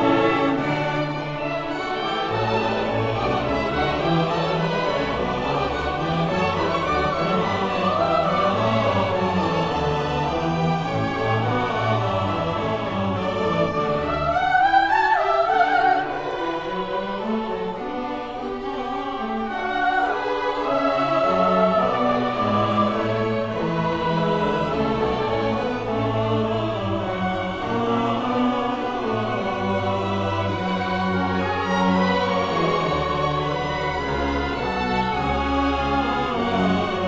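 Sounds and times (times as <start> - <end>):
orchestra playing classical music: 0.0 - 37.0.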